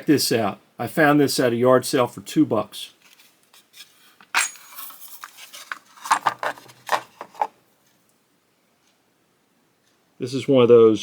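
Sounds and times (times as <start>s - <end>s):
metal tools clinking: 3.8s - 7.5s.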